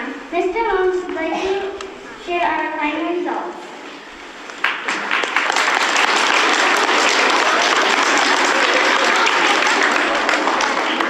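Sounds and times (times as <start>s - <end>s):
audience applauding: 4.2s - 11.0s.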